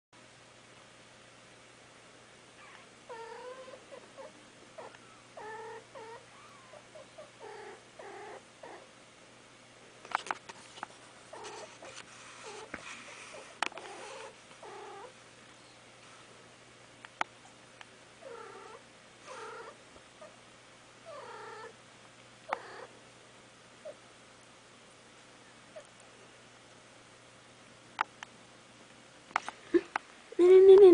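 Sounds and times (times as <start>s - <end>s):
cat chirping: 2.6s - 8.8s.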